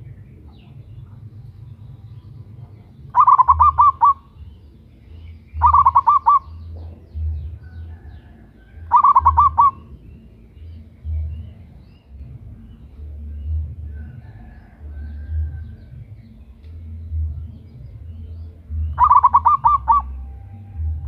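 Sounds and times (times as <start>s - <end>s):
dove bubbling cooing: 2.8s - 4.4s, 5.6s - 6.6s, 7.9s - 9.9s, 19.0s - 20.2s.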